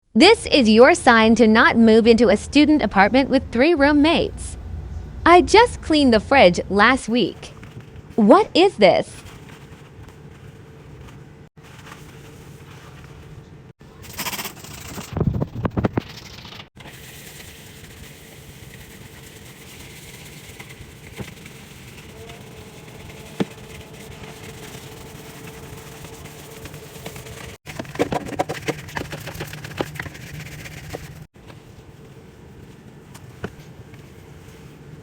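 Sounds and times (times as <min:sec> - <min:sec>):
low steady hum: 0:00.2 - 0:14.9
scrubbing and clattering: 0:14.0 - 0:35.0.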